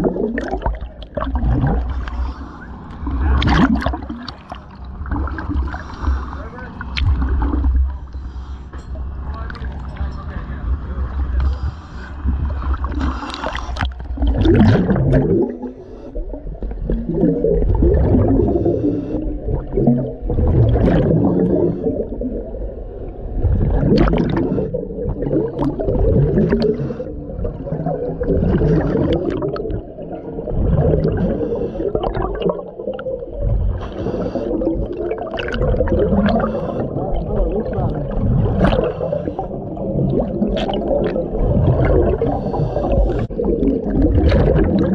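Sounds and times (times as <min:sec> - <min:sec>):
gurgling exhaust bubbles: 0:00.0 - 0:44.9
diver breathing in helmet: 0:01.8 - 0:03.1, 0:05.6 - 0:06.8, 0:08.0 - 0:08.8, 0:11.4 - 0:14.1, 0:15.6 - 0:16.5, 0:18.3 - 0:19.5, 0:26.5 - 0:27.4, 0:31.0 - 0:32.3, 0:33.6 - 0:35.0, 0:36.1 - 0:37.2, 0:38.5 - 0:39.9, 0:41.9 - 0:43.4.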